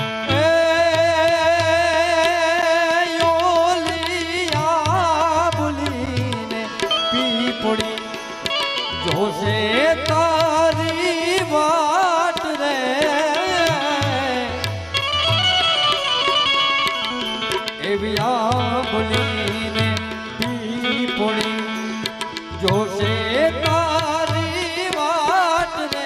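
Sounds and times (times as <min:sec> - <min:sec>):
hand drum rhythm: 0:03.2 - 0:26.0
sliding pitch folk melody: 0:13.6 - 0:25.4.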